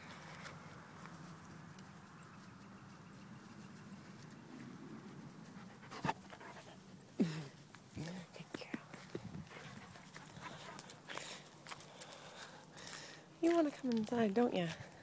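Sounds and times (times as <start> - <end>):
dog panting: 5.4 - 7.0, 9.4 - 12.6.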